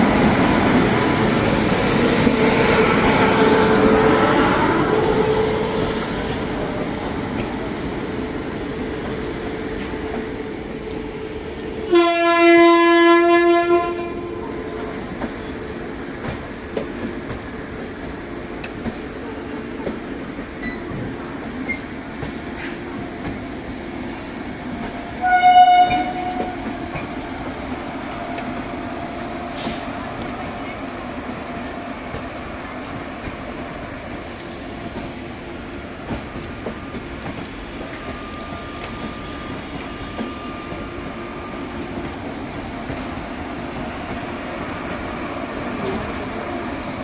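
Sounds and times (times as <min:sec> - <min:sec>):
train rumbling: 0:00.0 - 0:47.0
train horn blast: 0:02.6 - 0:05.9, 0:11.8 - 0:14.9, 0:25.2 - 0:26.7
higher-pitched horn blast: 0:11.8 - 0:14.5, 0:25.2 - 0:26.6.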